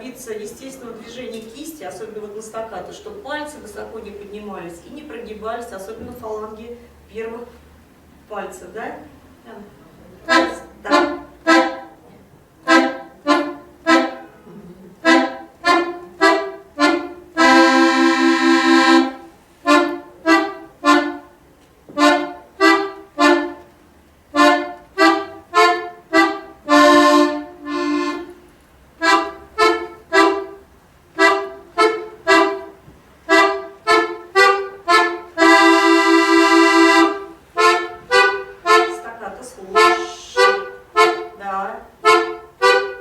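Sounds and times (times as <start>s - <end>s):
accordion chord held: 10.2s - 43.0s
accordion playing staccato thirds: 10.2s - 43.0s.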